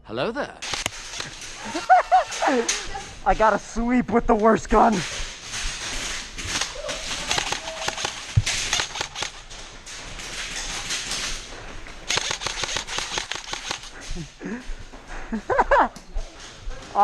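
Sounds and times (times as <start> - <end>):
airsoft guns firing: 0.6 - 2.9, 5.0 - 11.4, 12.0 - 14.2.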